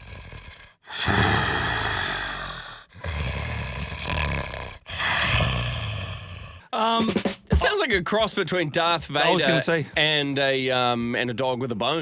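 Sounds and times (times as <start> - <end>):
man imitating snoring: 0.0 - 6.7.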